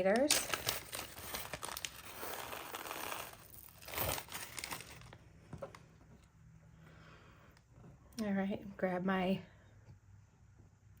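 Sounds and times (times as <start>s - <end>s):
plastic packet crinkling: 0.0s - 5.2s.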